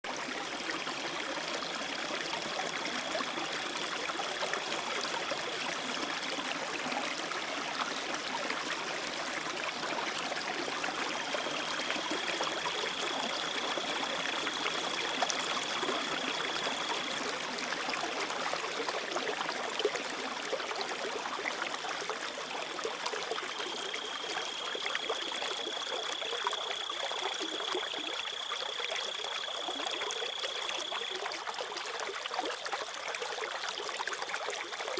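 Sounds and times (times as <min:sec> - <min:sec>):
stream trickling: 0:00.1 - 0:34.9
crickets trilling: 0:23.4 - 0:31.4.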